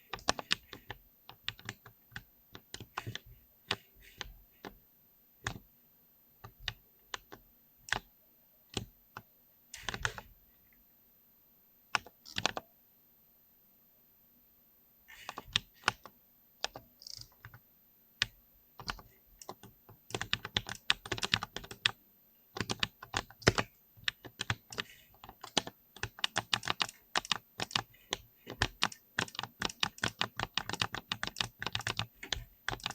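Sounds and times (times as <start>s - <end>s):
mechanical keyboard typing: 0.0s - 4.7s, 6.4s - 8.1s, 9.8s - 10.3s, 12.0s - 12.7s, 15.1s - 17.6s, 18.2s - 22.0s, 22.6s - 32.9s.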